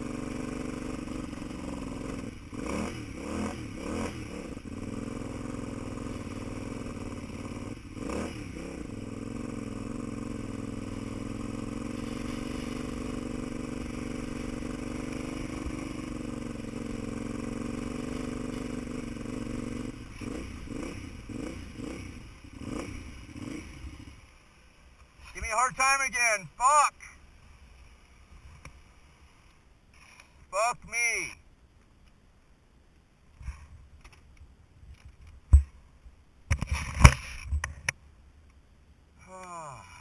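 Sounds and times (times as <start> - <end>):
vehicle engine running and stumbling: 0.0 - 24.1.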